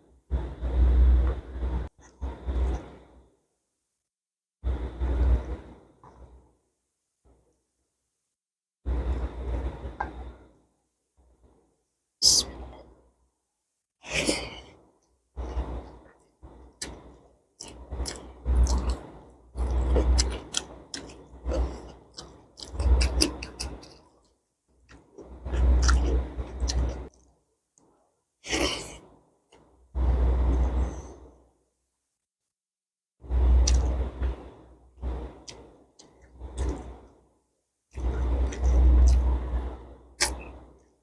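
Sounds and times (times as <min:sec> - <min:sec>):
chewing and mouth smacking: 0:17.6 - 0:24.2, 0:33.6 - 0:33.9.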